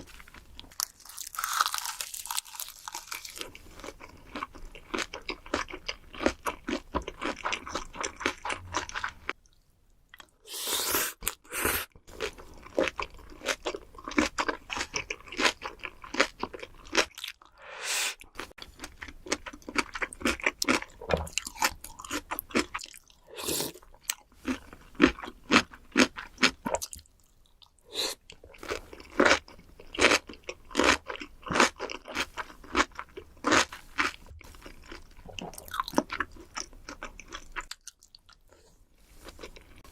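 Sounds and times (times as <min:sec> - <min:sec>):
crisp crunching and wet chewing: 0:00.1 - 0:09.6, 0:18.3 - 0:38.5.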